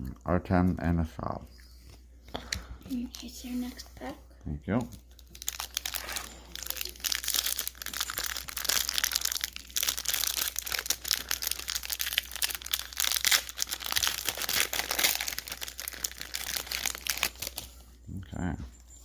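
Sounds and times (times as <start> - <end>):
wrapper tearing and crinkling: 4.8 - 17.8.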